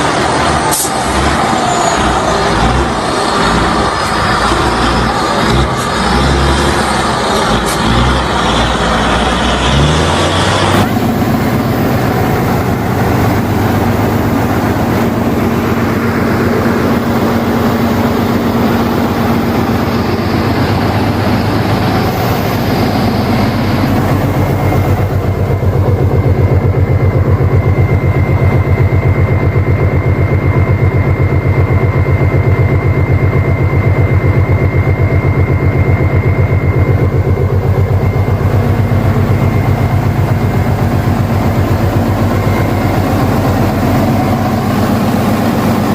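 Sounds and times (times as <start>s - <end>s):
diesel truck engine running: 0.0s - 45.9s
road noise: 0.0s - 45.9s.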